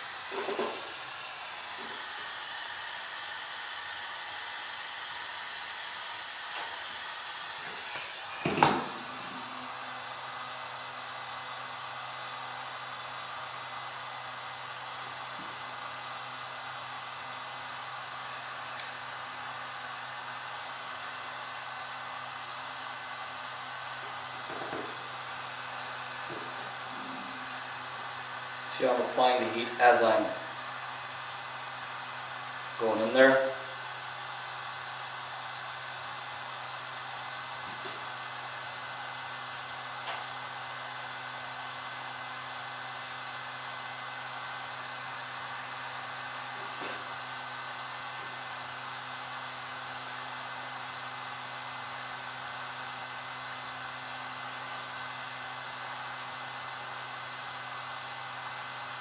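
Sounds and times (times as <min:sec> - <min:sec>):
heat gun blowing: 0:00.0 - 0:11.2
faint hum: 0:24.8 - 0:30.6.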